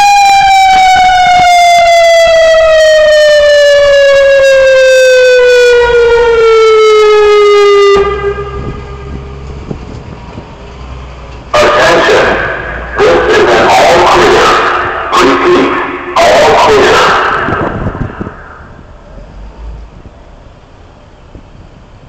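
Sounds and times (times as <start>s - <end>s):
emergency warning siren wailing: 0.0s - 10.2s, 11.5s - 20.5s
wind noise: 3.5s - 22.0s
loud burst of sound: 11.5s - 18.9s.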